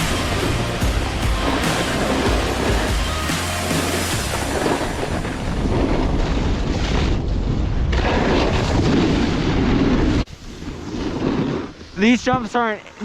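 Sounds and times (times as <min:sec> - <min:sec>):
wind buffeting microphone: 0:04.2 - 0:12.7.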